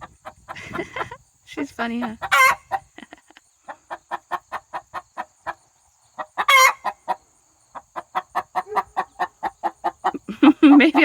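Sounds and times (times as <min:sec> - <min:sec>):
hen clucking: 0:00.0 - 0:11.0
hen squawking: 0:01.9 - 0:02.8.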